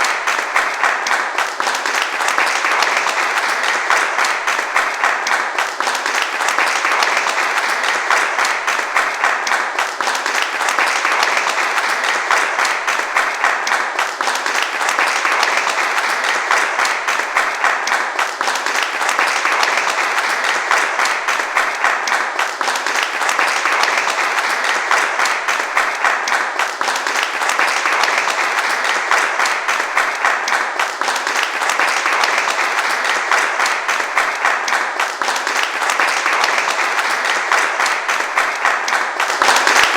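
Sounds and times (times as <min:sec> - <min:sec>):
large crowd applauding: 0:00.0 - 0:39.9.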